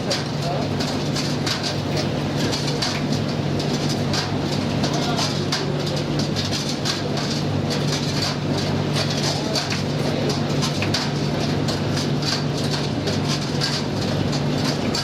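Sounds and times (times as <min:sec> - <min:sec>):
tumble dryer humming: 0:00.0 - 0:06.6.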